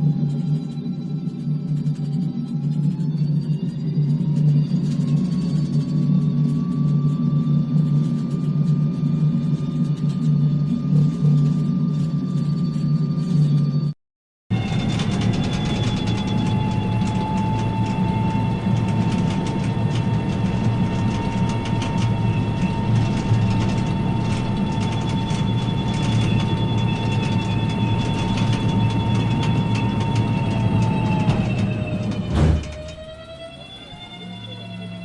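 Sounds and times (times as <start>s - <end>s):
tank turret motor whine: 14.5s - 35.0s.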